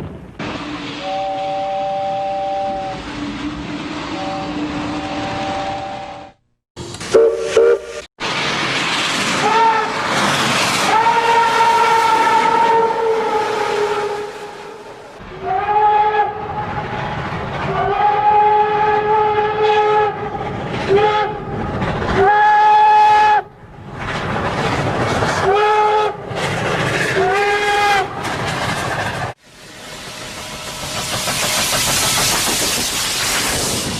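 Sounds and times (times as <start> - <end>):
moving train rumbling: 0.0 - 33.9
train whistle blasts: 0.6 - 6.4, 7.1 - 8.1, 10.9 - 14.6, 15.4 - 16.7.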